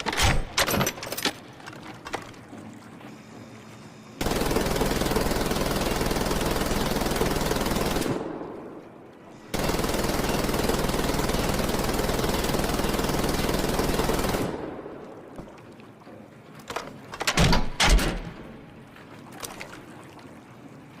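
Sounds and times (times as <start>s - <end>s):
machine gun firing bursts: 4.2s - 8.3s, 9.5s - 14.7s.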